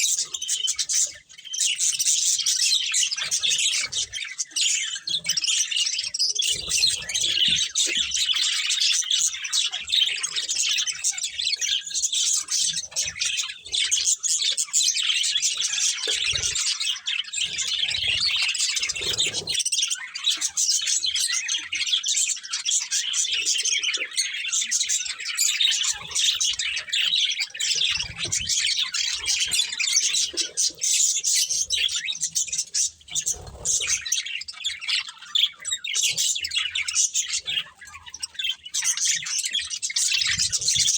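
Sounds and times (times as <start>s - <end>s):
budgerigars chirping: 0.0s - 40.9s.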